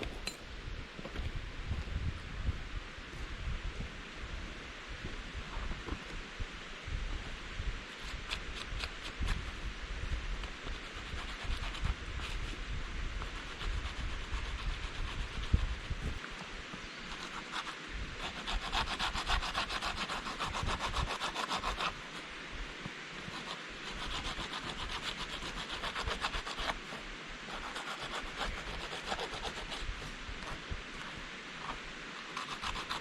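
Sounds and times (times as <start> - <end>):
pumice stone rasping on hide: 13.3 - 16.0, 17.1 - 22.0, 23.2 - 30.6, 31.6 - 33.0.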